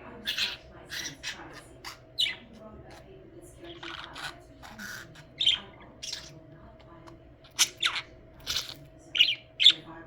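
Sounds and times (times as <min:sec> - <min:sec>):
budgerigar chirps and squawks: 0:00.2 - 0:02.5, 0:07.5 - 0:09.8.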